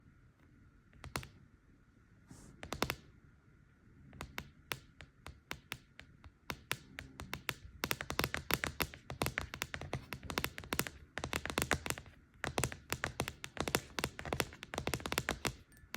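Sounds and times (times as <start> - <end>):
fingernails tapping on hard surface: 2.6 - 3.0, 4.2 - 15.9.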